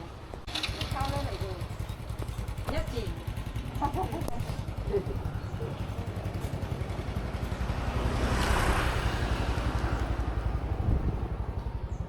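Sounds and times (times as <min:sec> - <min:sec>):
vehicle passing close by: 0:05.2 - 0:12.0.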